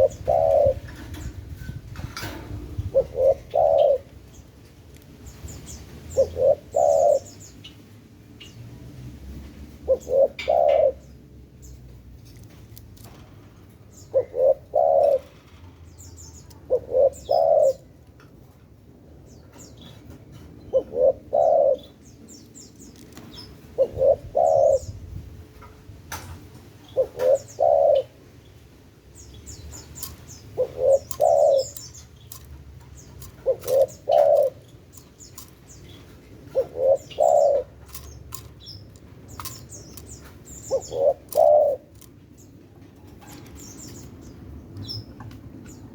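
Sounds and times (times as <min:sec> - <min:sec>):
dove cooing: 0:00.0 - 0:01.3, 0:02.8 - 0:04.3, 0:06.1 - 0:07.4, 0:09.9 - 0:11.2, 0:13.9 - 0:15.6, 0:16.4 - 0:18.0, 0:20.7 - 0:22.0, 0:23.7 - 0:25.0, 0:26.9 - 0:28.3, 0:29.5 - 0:42.2
small birds chirping: 0:00.0 - 0:01.4, 0:02.7 - 0:08.7, 0:09.9 - 0:18.0, 0:19.2 - 0:25.2, 0:26.8 - 0:45.9.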